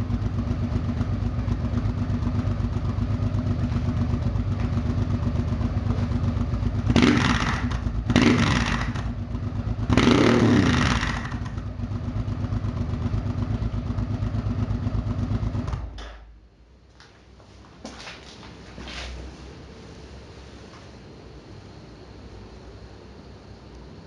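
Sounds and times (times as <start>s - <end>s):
motorcycle engine idling and revving: 0.0s - 16.4s.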